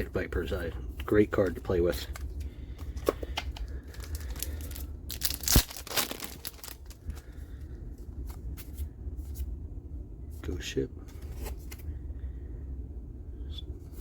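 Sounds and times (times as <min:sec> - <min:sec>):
trading cards clicking and rustling: 0:01.0 - 0:07.2.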